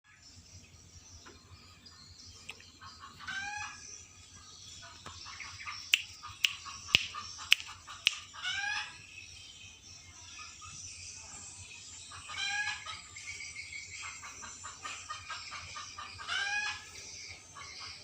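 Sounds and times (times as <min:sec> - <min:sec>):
starling calling: 0:02.6 - 0:09.1
sharp clicks: 0:05.9 - 0:08.3.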